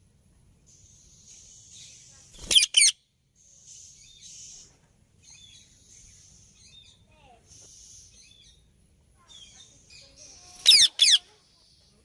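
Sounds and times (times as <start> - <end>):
faint high hiss: 0.0 - 10.7
parakeet screeching: 2.4 - 2.9, 10.6 - 11.2.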